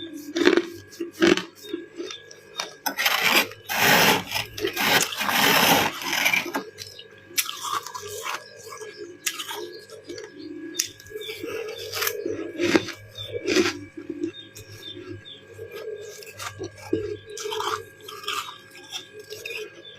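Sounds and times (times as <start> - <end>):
freezer frost scraping: 0.0 - 9.9, 11.1 - 19.8
frost crunching: 0.0 - 19.8.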